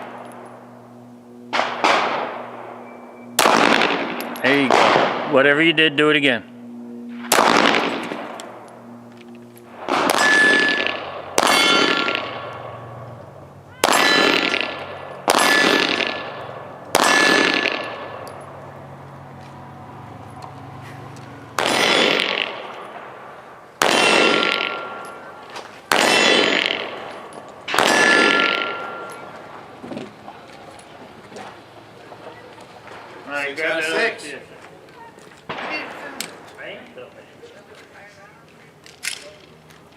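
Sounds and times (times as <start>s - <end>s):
pistol shots echoing: 1.5s - 5.4s, 7.1s - 9.1s, 9.7s - 19.0s, 21.4s - 29.8s, 35.5s - 36.4s.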